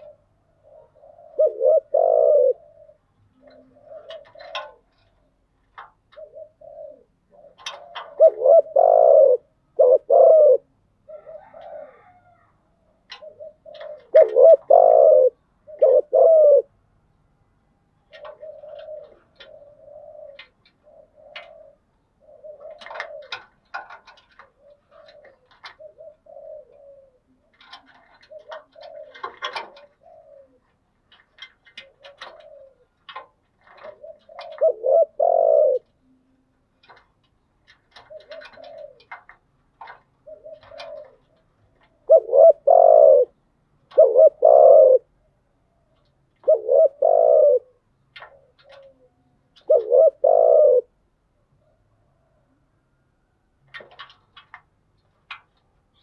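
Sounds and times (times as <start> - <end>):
dove cooing: 0.0 - 16.8, 18.0 - 52.6
faint clicks: 36.7 - 42.0, 53.6 - 56.0.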